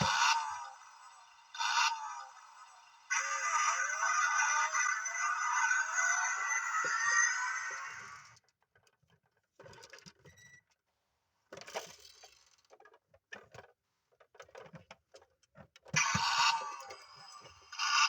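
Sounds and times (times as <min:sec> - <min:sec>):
metal toy truck clicking and rattling: 0:11.5 - 0:16.1.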